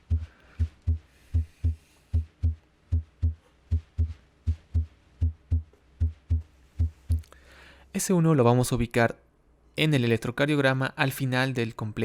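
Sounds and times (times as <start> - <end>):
heartbeat lub-dub thumps: 0.0 - 7.3.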